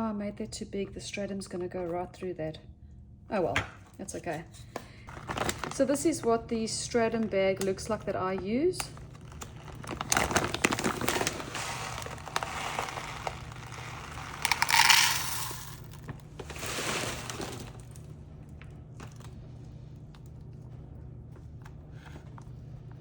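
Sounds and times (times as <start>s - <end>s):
granules pouring into plastic cup: 9.6s - 18.0s.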